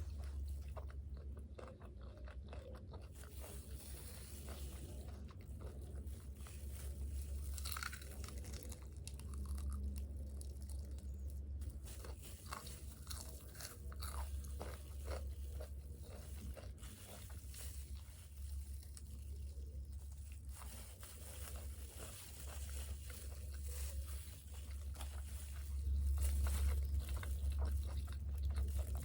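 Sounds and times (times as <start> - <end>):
low hum: 0.0 - 1.9, 2.6 - 29.0
crunchy chewing: 0.0 - 29.0.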